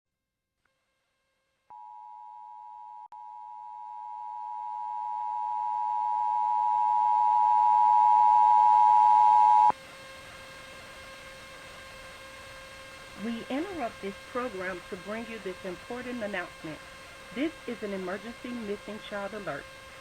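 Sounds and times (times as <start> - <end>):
faint steady hum: 1.7 - 20.0.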